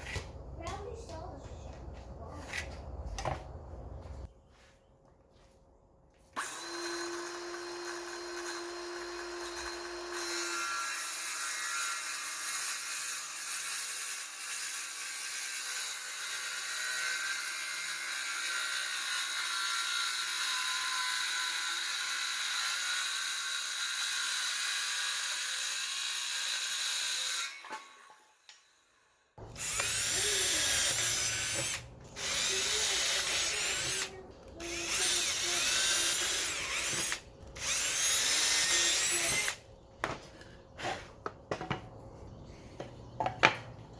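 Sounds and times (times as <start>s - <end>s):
power tool running: 6.4s - 11.2s, 29.4s - 39.6s.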